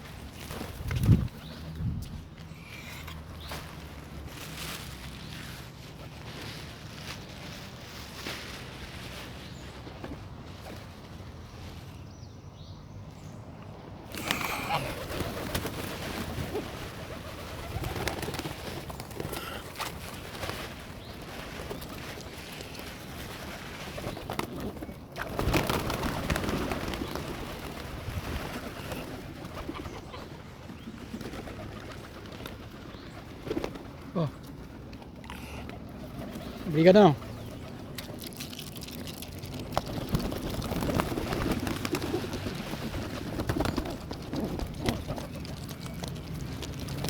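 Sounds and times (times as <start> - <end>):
birds flurrying: 14.0 - 47.0
pigeons cooing: 14.1 - 21.1, 39.8 - 47.0.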